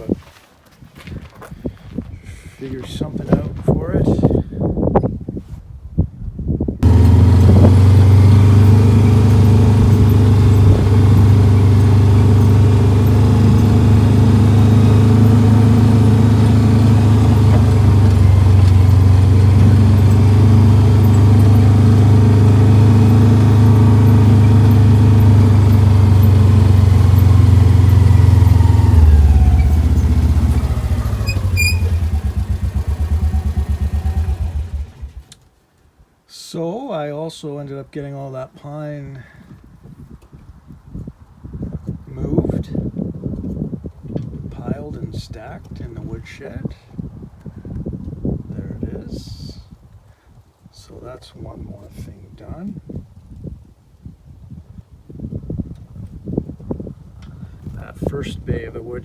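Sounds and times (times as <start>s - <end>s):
planer motor running: 6.8s - 35.0s
motor winding down: 6.8s - 35.4s.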